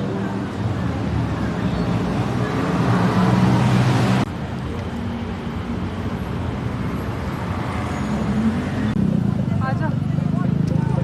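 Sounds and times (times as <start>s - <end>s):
vehicle engine rumble: 0.0s - 11.0s.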